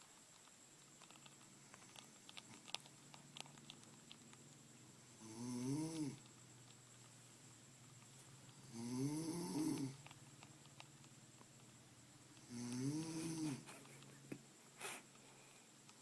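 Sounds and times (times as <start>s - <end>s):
woman snoring: 5.2s - 6.2s, 8.6s - 10.0s, 12.5s - 13.7s.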